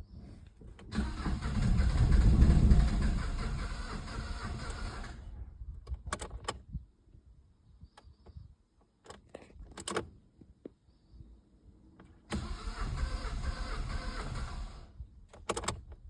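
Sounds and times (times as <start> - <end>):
diesel engine cranking: 0.8 - 5.5, 12.3 - 15.9.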